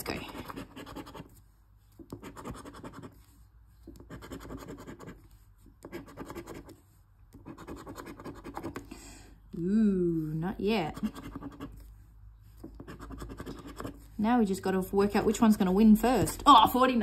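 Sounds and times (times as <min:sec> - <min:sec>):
lottery ticket being scratched: 0:10.8 - 0:12.0.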